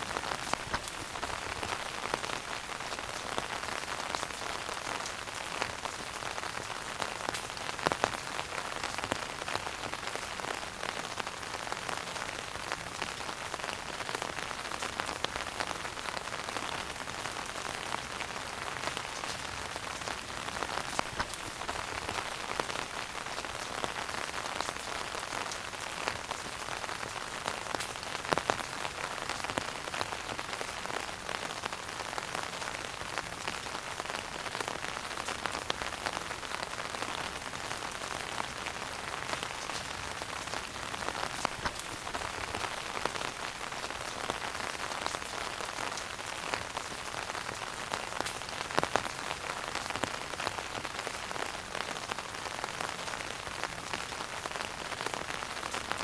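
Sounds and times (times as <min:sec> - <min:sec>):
wood fire crackling: 0:00.2 - 0:08.1, 0:18.1 - 0:25.8, 0:39.4 - 0:44.4.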